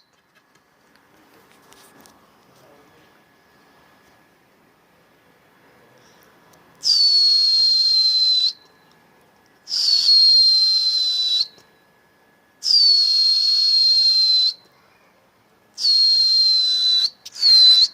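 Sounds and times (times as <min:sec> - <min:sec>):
shrill whistle blasts: 0:06.8 - 0:08.7, 0:09.7 - 0:11.6, 0:12.6 - 0:14.7, 0:15.8 - 0:17.9.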